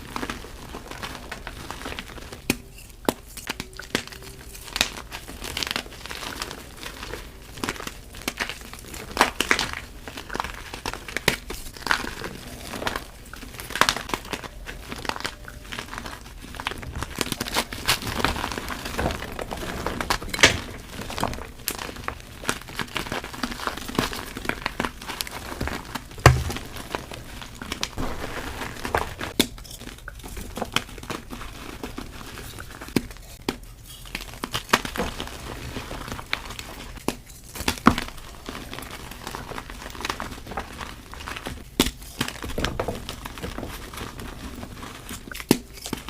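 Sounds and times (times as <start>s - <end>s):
chalk being crushed: 2.4s - 29.8s.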